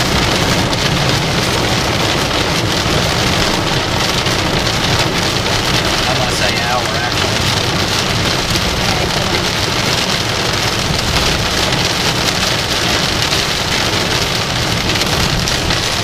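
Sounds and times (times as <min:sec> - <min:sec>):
heavy rain on vehicle roof: 0:00.0 - 0:16.0.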